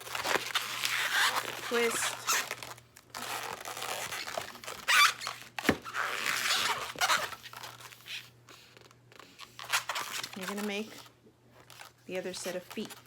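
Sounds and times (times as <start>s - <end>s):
balloon squeaking and rubbing: 0.0s - 8.3s, 9.1s - 10.9s.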